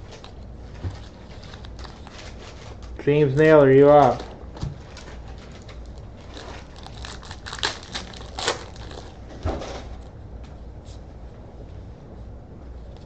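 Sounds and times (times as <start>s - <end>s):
wrapper crinkling and tearing: 1.0s - 4.3s, 4.9s - 9.2s.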